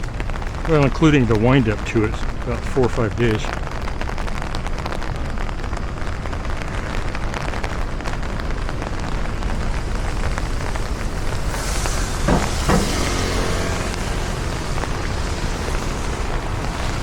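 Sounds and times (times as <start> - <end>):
close raindrop ticks: 0.0 - 17.0
heavy rain downpour: 0.0 - 17.0.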